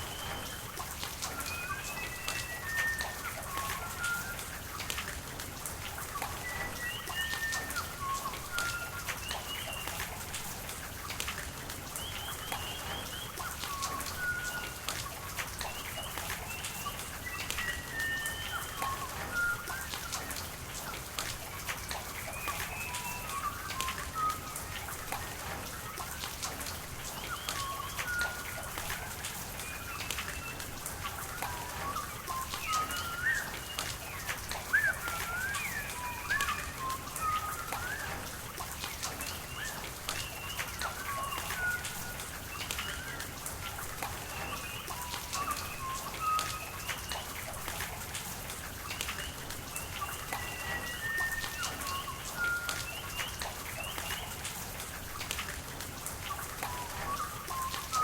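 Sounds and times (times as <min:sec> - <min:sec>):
drops ticking: 0:00.0 - 0:58.0
running water: 0:00.0 - 0:58.0
steady rain: 0:00.0 - 0:58.0
birds chirping: 0:27.0 - 0:48.1, 0:48.7 - 0:54.6.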